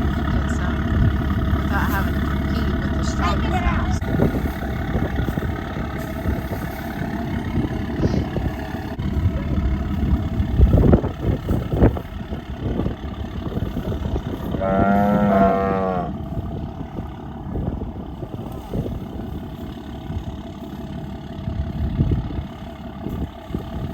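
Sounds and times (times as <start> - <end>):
vehicle engine idling: 0.0 - 23.9
cow mooing: 14.5 - 16.2.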